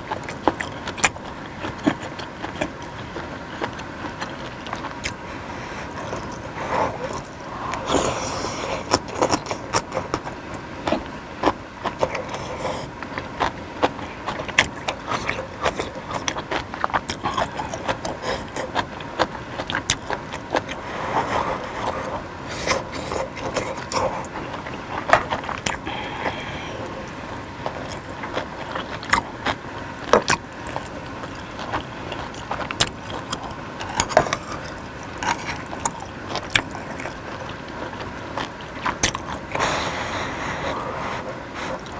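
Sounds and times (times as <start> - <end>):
chewing: 0.0 - 41.9.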